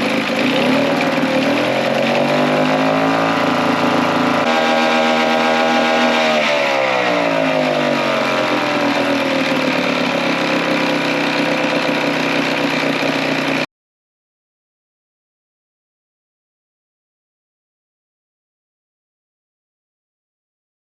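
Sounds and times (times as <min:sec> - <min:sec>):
outboard motor running: 0:00.0 - 0:13.7.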